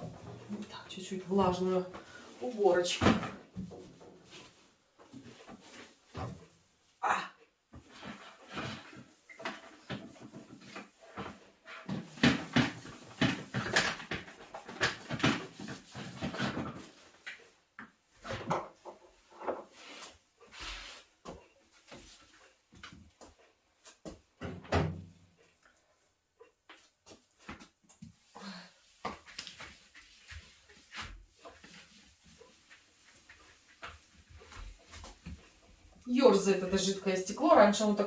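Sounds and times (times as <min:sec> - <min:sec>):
objects knocking and clattering: 0:08.4 - 0:17.1.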